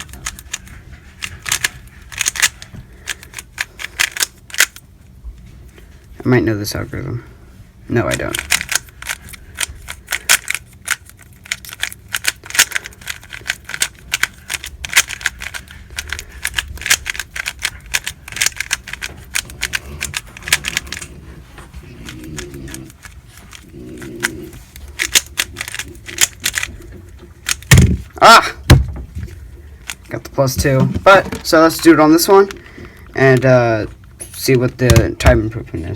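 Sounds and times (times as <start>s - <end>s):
speedcube plastic clicking: 0.0s - 4.8s, 8.1s - 21.1s, 22.0s - 26.8s, 27.4s - 28.1s.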